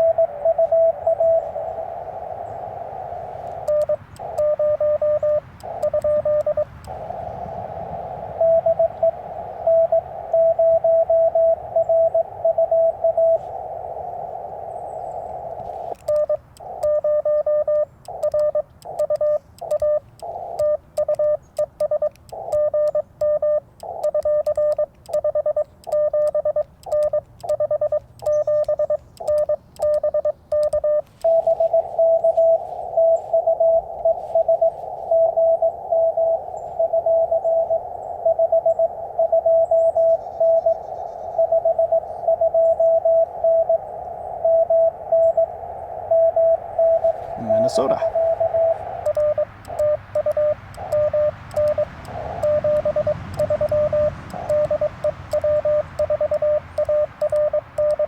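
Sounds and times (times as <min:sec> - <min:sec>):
higher-pitched morse signal: 0:00.0 - 0:58.0
morse code sidetone beeps: 0:00.0 - 0:58.0
radio receiver hiss: 0:00.0 - 0:58.0.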